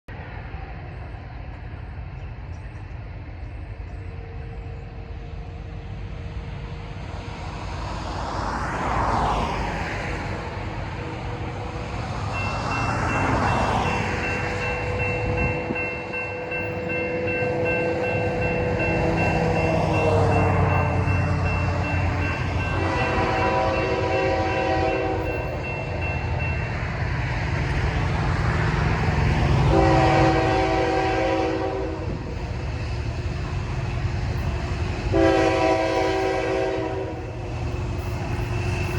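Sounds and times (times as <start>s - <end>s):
locomotive engine rumbling: 0.2s - 38.9s
crossing bell ringing: 12.2s - 28.2s, 34.3s - 38.9s
locomotive horn: 14.5s - 26.0s, 29.4s - 32.3s, 34.7s - 37.5s.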